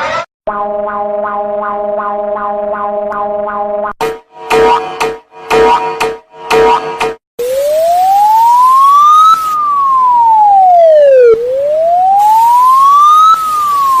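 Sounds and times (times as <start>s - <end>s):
electronic wailing siren: 4.3s - 14.0s.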